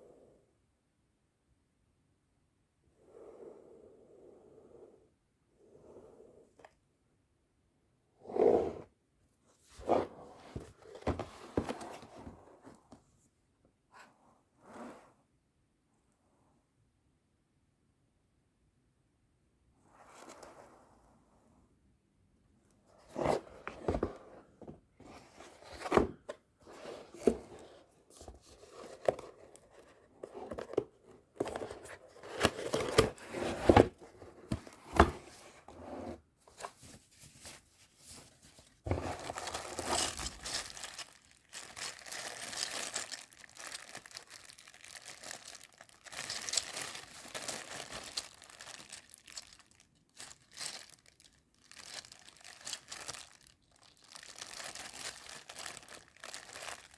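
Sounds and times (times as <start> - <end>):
plastic and paper crinkling: 36.5 - 56.9.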